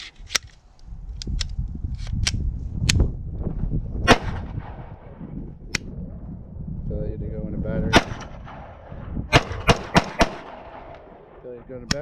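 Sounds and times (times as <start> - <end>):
wind rumble on microphone: 0.0 - 12.0
pistol shots: 7.9 - 12.0.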